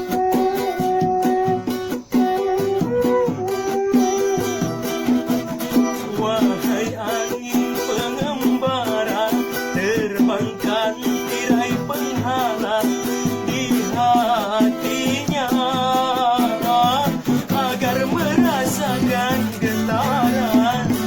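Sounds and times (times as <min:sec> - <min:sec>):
wavering melody line: 0:00.0 - 0:06.8
plucked guitar: 0:00.0 - 0:21.0.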